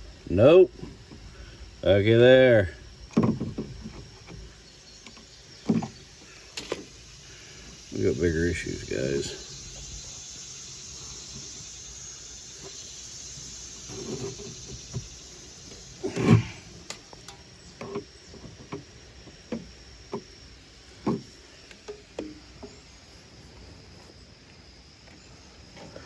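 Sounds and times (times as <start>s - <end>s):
steady high hiss: 0.0s - 26.0s
light handling knocks and clicks: 3.0s - 7.0s, 13.9s - 20.4s, 21.0s - 22.9s.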